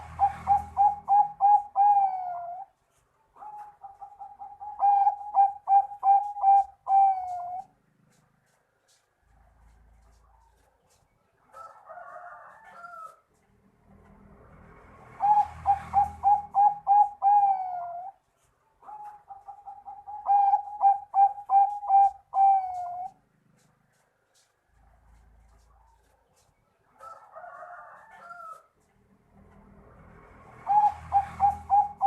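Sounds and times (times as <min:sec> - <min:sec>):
dove cooing: 0:00.0 - 0:02.8, 0:03.4 - 0:08.2, 0:15.1 - 0:24.0, 0:30.6 - 0:32.0
rough bird call: 0:18.9 - 0:24.4, 0:30.6 - 0:32.0.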